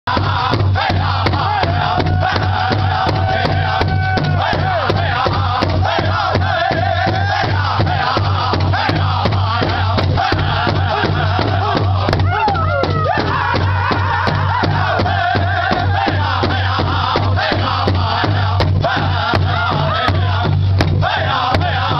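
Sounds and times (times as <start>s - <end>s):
group singing in high voices: 0.1s - 21.9s
steady drumbeat on large drum: 0.1s - 21.9s.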